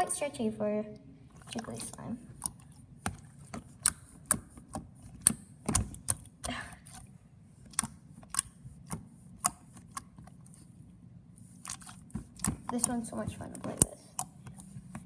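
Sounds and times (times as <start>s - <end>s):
slime clicking and popping: 1.4s - 7.0s, 7.7s - 10.3s, 11.6s - 14.7s.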